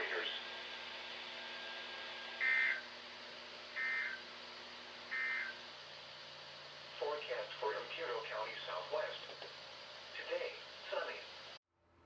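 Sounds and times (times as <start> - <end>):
digital data bursts: 2.4 - 2.8.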